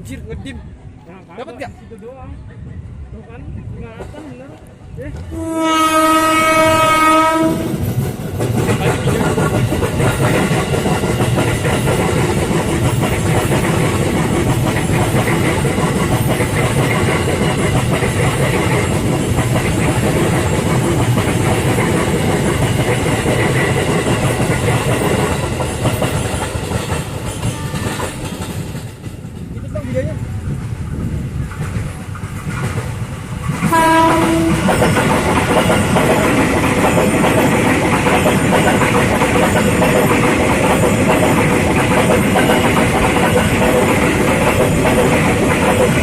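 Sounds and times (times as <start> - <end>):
train wheels clattering: 5.2 - 46.0
train horn blast: 5.3 - 7.8, 33.7 - 34.7.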